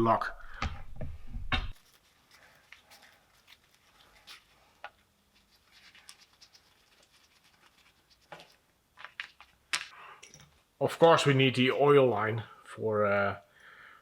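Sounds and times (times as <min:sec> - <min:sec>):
faint clicks and scratches: 0:01.7 - 0:09.5.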